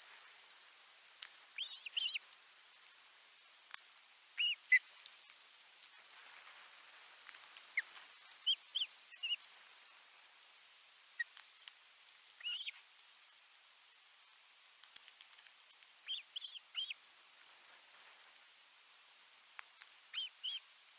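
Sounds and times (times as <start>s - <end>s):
tiny clicks and chirps: 0.7s - 9.5s, 11.1s - 13.7s, 14.8s - 17.5s, 19.2s - 20.7s
nestlings squeaky begging calls: 1.6s - 2.2s, 4.4s - 4.9s, 7.7s - 9.4s, 12.4s - 12.8s, 16.0s - 17.0s, 20.1s - 20.6s.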